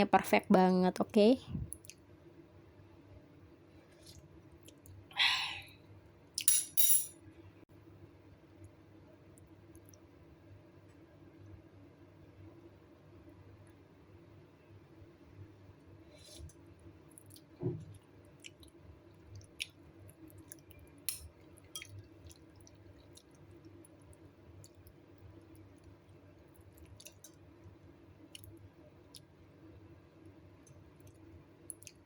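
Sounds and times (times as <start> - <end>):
low steady hum: 0.0 - 32.0
quiet eating sounds: 1.0 - 2.1, 3.8 - 5.1, 15.8 - 32.0.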